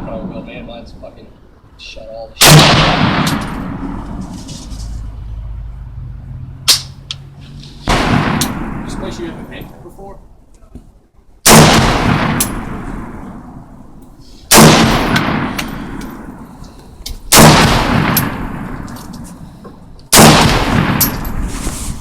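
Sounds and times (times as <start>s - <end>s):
rifle shots echoing: 2.4s - 4.2s, 7.8s - 9.6s, 11.4s - 13.8s, 14.5s - 16.6s, 17.3s - 19.3s, 20.1s - 21.4s.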